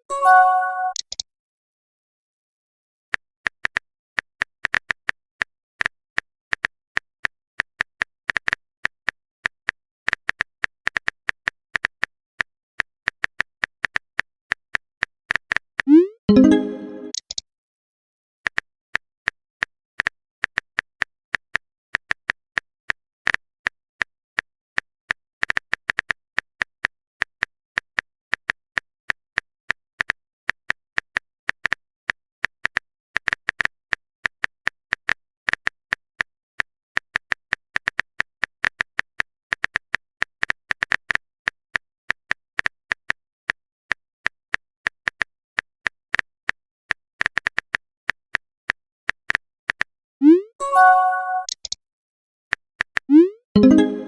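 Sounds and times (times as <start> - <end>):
keyboard typing clicks: 0.1 - 1.2, 15.8 - 17.4, 50.2 - 51.8, 52.9 - 54.0.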